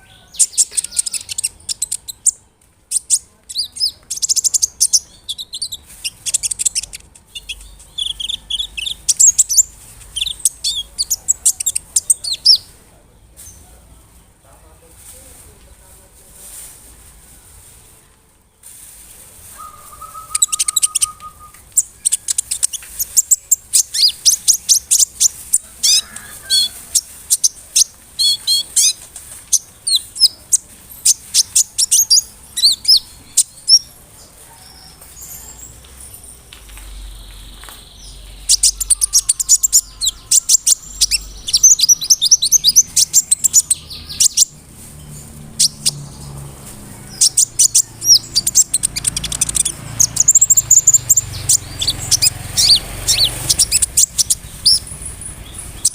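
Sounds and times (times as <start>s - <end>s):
bird singing high chirps and trills: 0.0s - 14.1s, 19.6s - 55.9s.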